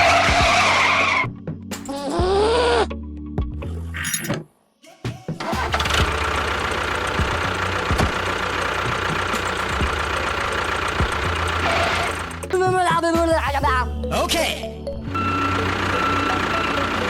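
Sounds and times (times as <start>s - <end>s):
small machine rattling and knocking: 5.8s - 12.5s.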